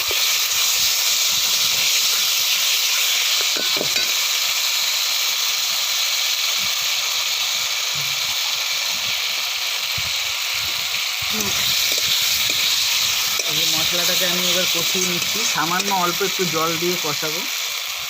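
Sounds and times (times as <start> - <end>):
frying sizzle in a pan: 0.0 - 18.0.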